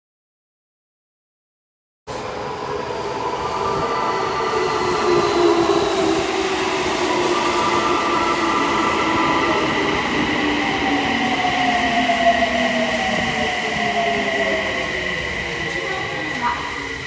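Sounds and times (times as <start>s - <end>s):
train running noise: 2.1s - 17.0s.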